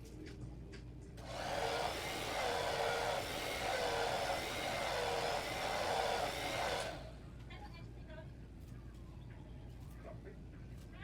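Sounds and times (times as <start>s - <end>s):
hair dryer blowing: 1.2s - 7.2s.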